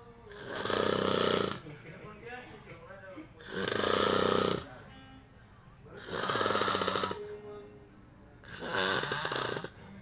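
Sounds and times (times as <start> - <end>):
man snoring: 0.3 - 1.6, 3.4 - 4.8, 6.0 - 7.3, 8.4 - 9.8.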